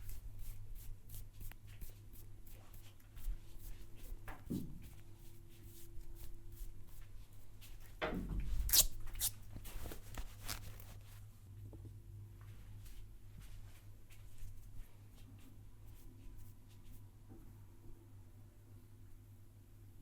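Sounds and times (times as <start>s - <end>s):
hands rubbing hair and skin: 9.2s - 11.2s.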